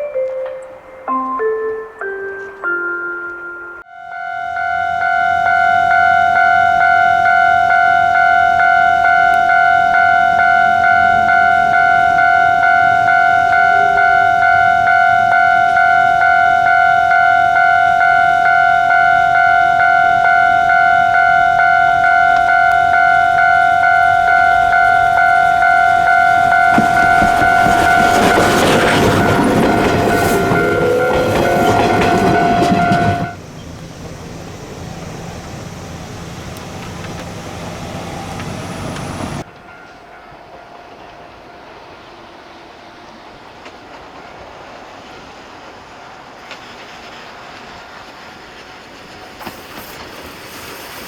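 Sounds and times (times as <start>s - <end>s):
level crossing alarm ringing: 0.0s - 33.4s
steam train rumble and clatter: 19.0s - 51.0s.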